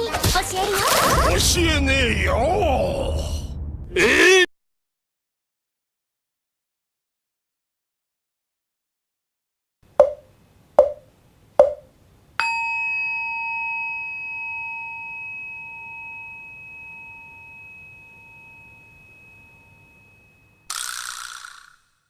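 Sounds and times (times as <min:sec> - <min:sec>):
hollow wooden knocks: 0:10.0 - 0:11.9
bell ringing with long tone: 0:12.4 - 0:20.7.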